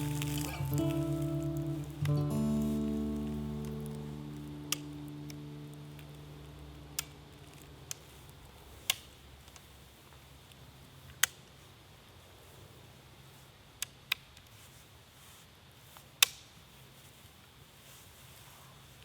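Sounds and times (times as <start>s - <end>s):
acoustic guitar music: 0.0s - 8.0s.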